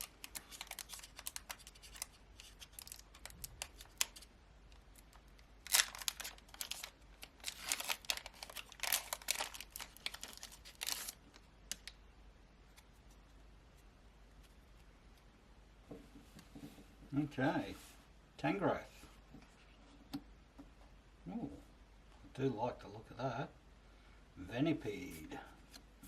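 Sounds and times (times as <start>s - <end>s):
foil wrapper crinkling: 0.0s - 11.9s.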